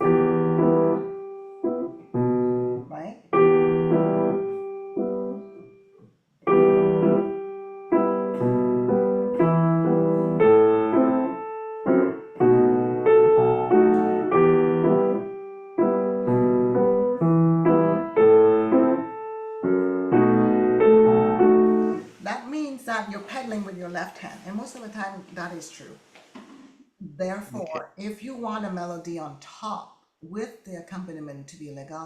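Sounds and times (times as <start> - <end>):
piano dance accompaniment: 0.0 - 5.7, 6.4 - 22.1
piano sustain pedal: 6.5 - 22.0.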